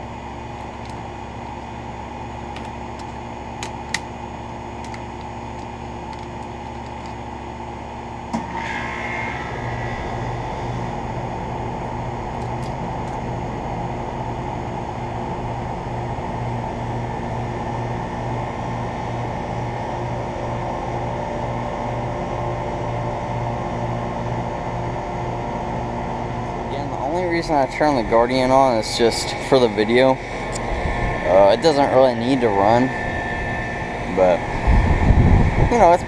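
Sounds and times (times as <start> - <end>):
air conditioner hum: 0.0 - 36.0
air conditioner clicks: 0.5 - 1.7, 2.5 - 4.2, 4.8 - 7.3, 12.3 - 13.3
low pulsing throb: 8.4 - 20.0, 26.1 - 36.0.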